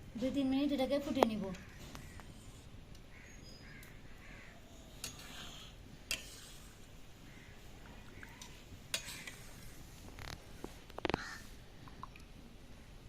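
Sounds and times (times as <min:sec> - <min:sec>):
crows cawing: 0:03.1 - 0:04.6, 0:07.2 - 0:08.4, 0:11.1 - 0:11.5.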